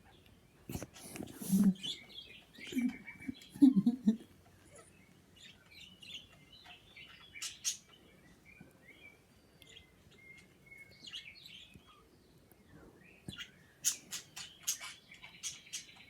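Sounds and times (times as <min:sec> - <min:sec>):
pet birds chirping: 0:00.0 - 0:16.0.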